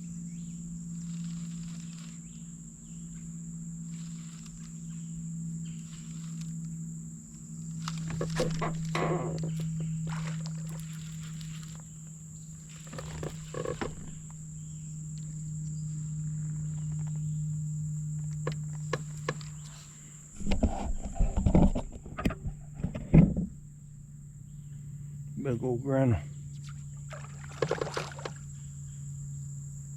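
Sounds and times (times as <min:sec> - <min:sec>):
steady low hum: 0:00.0 - 0:29.9
fish splashing in water: 0:07.8 - 0:11.9, 0:26.6 - 0:28.5.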